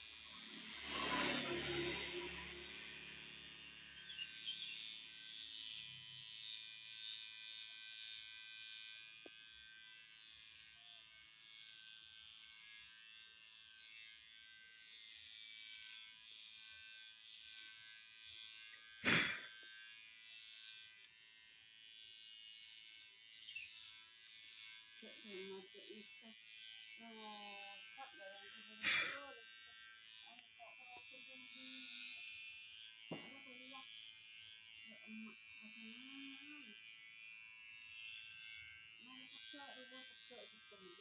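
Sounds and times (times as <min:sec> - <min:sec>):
electric shaver buzzing: 0:00.0 - 0:41.0.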